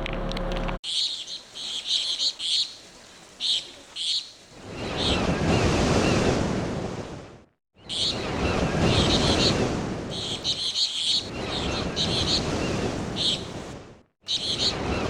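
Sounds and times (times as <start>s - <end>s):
high bird chirps: 0.8s - 2.7s, 7.8s - 9.6s, 10.2s - 13.5s, 14.3s - 14.8s.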